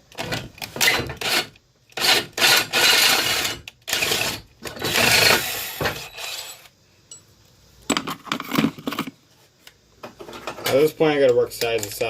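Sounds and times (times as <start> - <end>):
electric drill boring into steel: 0.8 - 6.7.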